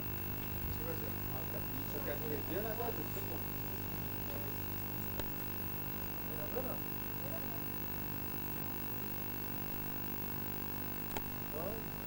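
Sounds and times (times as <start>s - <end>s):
electrical hum and hiss: 0.0s - 12.0s
faint distant voice: 6.3s - 7.8s.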